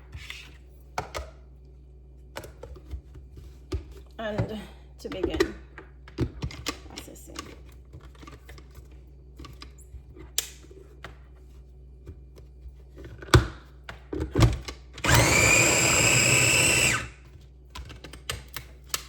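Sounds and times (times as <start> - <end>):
food processor clicks and knocks: 14.4 - 17.1
food processor motor whining: 15.0 - 17.2.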